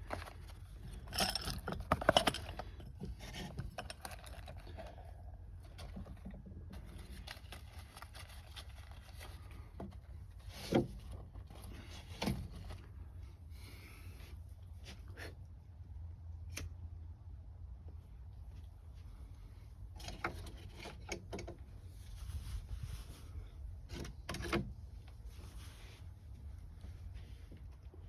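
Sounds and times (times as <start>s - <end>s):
small objects clicking and rattling: 0.0s - 4.8s
low steady hum: 0.0s - 28.0s.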